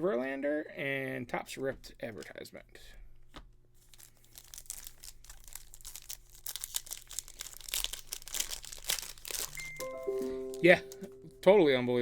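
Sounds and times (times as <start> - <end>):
plastic wrapper crinkling and tearing: 3.8 - 11.1.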